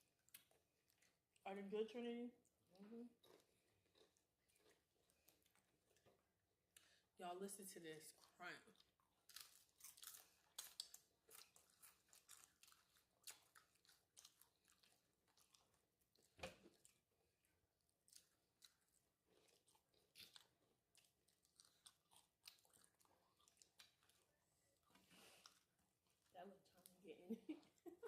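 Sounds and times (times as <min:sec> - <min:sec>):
tortilla chips crunching: 0:08.9 - 0:17.0.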